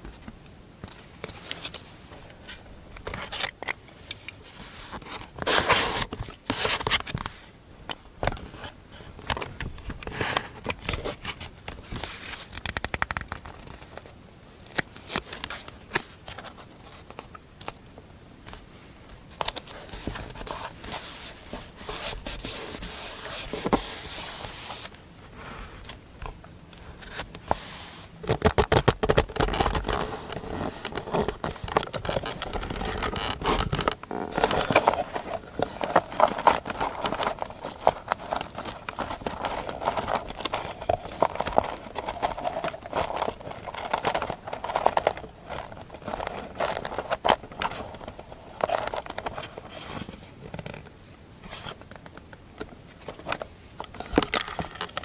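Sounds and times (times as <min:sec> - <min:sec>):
scratching and scraping paper: 0:10.1 - 0:14.2, 0:19.7 - 0:25.8, 0:27.0 - 0:50.8
paper rustling: 0:26.9 - 0:50.8.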